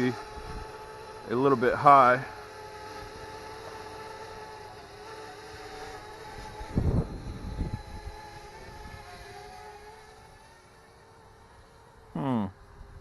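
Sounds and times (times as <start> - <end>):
drone propellers humming: 0.0 - 13.0
wind buffeting microphone: 0.2 - 0.9, 6.4 - 9.1.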